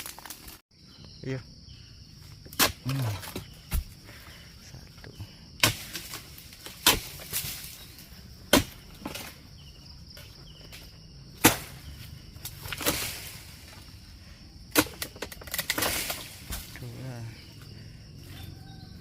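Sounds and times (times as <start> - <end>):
blade chopping into stalks: 5.6 - 7.8, 8.5 - 9.4, 11.4 - 13.8, 14.7 - 16.8
fronds rustling swish: 11.4 - 14.0, 15.5 - 17.1.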